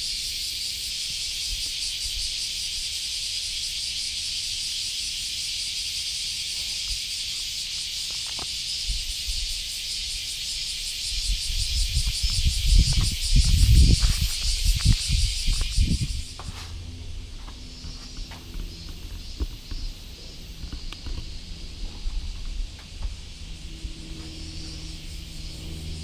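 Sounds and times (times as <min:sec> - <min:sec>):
insect chorus chirring: 0:00.0 - 0:26.0.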